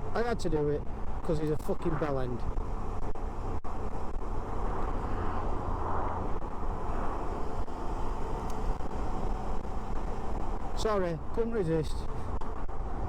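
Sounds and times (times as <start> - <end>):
wind rush: 0.8 - 10.7.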